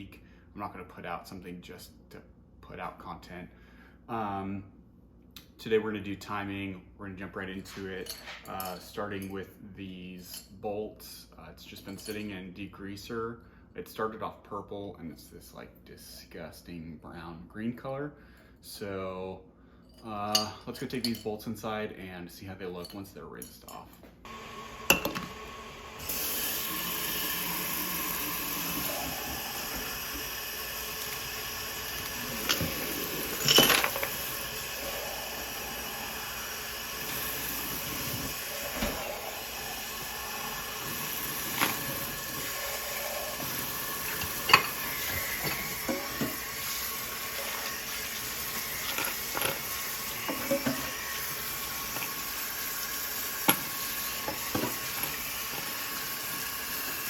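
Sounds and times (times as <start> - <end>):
water running: 24.3 - 57.0.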